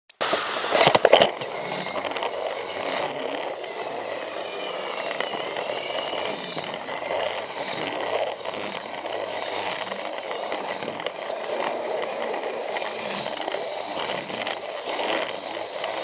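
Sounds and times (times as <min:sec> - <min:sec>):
faint high gear whine: 0:00.1 - 0:16.0
toy train motor whirring: 0:00.5 - 0:16.0.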